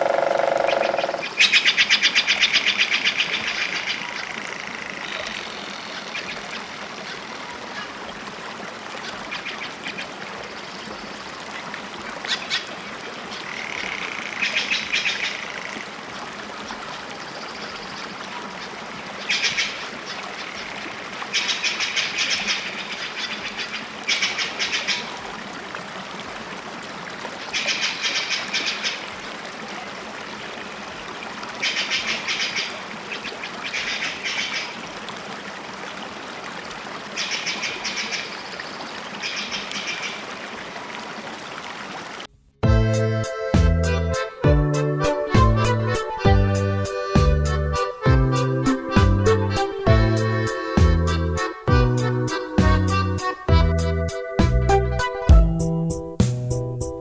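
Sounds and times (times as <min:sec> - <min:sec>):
bird chattering calls: 0:00.0 - 0:06.3.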